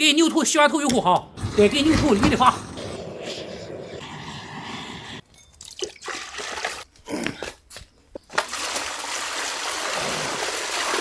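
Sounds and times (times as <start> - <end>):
water splashing and dripping: 5.6 - 7.0, 8.2 - 11.0
running water stream: 8.3 - 11.0.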